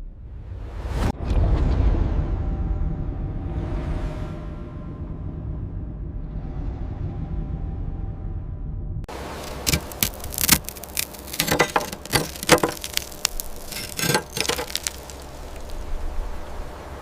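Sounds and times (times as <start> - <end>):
sharp clicks and cracks: 9.4 - 15.9.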